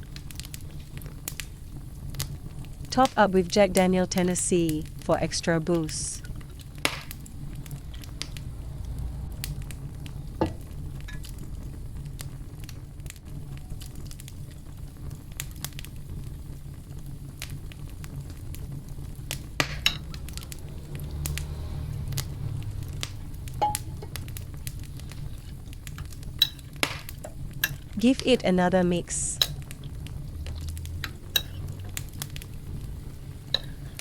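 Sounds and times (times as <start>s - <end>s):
low hum: 0.0s - 34.0s
squishing and stirring marinade: 22.6s - 28.3s, 29.5s - 34.0s.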